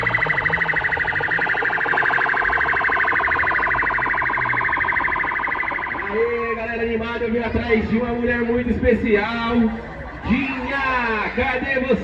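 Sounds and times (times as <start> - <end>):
low rumble: 0.0 - 4.8
pulsing electronic alarm tone: 0.0 - 12.0.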